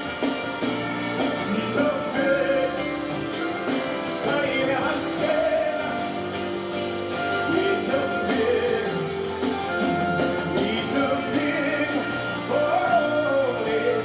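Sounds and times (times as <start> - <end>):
instrumental accompaniment: 0.0 - 14.0
voices singing: 1.0 - 14.0.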